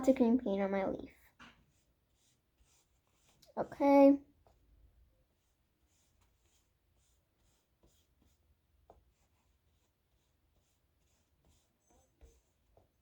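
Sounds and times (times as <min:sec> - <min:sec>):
paintbrush strokes on a leaf: 0:01.7 - 0:03.4.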